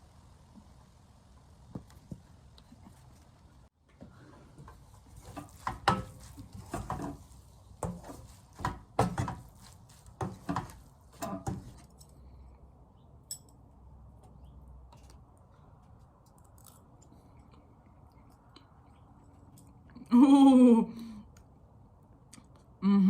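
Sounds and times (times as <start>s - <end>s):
utensil knocking and scraping cookware: 4.7s - 11.8s.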